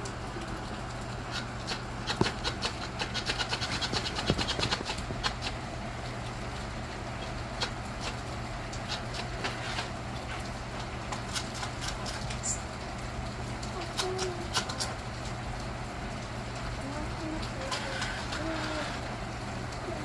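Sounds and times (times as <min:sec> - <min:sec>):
heavy rain hissing: 0:00.0 - 0:20.0
sharp irregular taps and clicks: 0:01.3 - 0:05.6.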